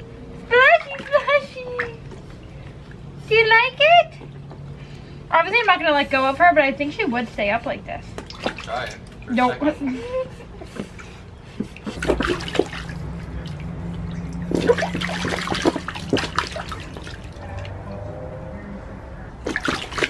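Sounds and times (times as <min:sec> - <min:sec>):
water splashing in baby tub: 0:00.5 - 0:03.1, 0:08.1 - 0:09.5, 0:11.7 - 0:18.3, 0:19.4 - 0:20.0.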